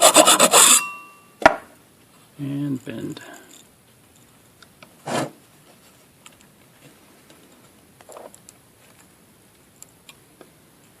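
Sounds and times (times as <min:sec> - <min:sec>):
metal scrape: 0:00.0 - 0:01.2, 0:05.0 - 0:05.4.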